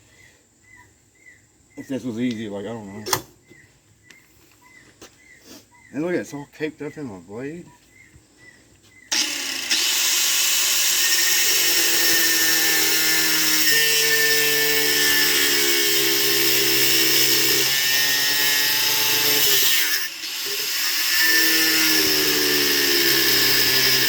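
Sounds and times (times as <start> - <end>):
power tool cutting antler: 9.1 - 24.0.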